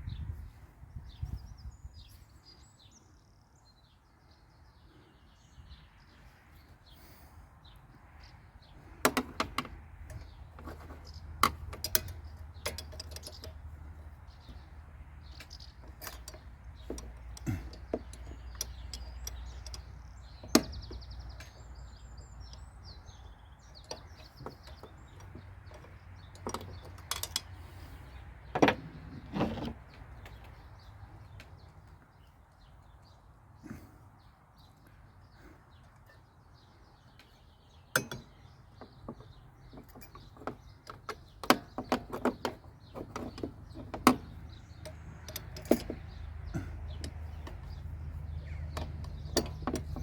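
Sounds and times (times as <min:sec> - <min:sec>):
metallic clicks of hand tools: 0:09.1 - 0:13.7, 0:15.3 - 0:21.6, 0:23.8 - 0:27.6, 0:39.8 - 0:47.7, 0:48.7 - 0:50.0.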